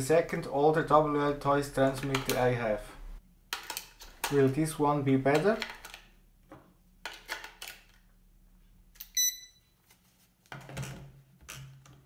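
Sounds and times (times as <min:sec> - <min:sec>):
short electronic beep: 0:09.2 - 0:09.7.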